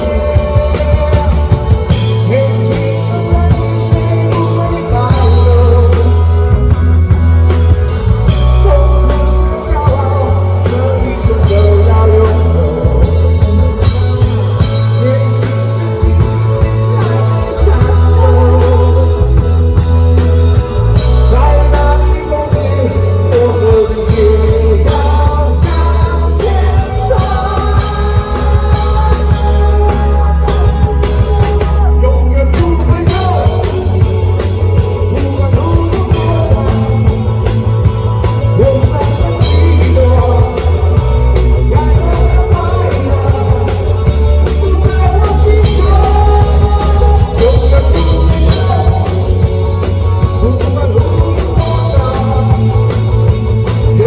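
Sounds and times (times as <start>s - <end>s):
live rock band playing: 0.0s - 54.0s
person singing: 0.0s - 54.0s.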